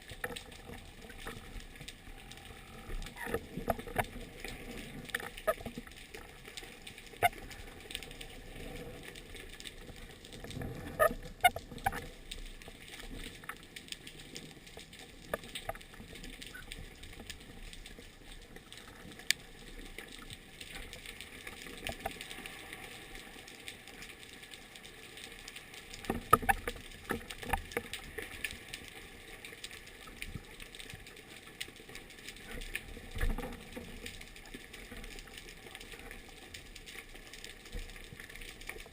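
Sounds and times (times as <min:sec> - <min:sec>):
underwater clicks and knocks: 0:00.1 - 0:06.3, 0:09.9 - 0:12.1, 0:13.0 - 0:18.0, 0:25.9 - 0:28.5.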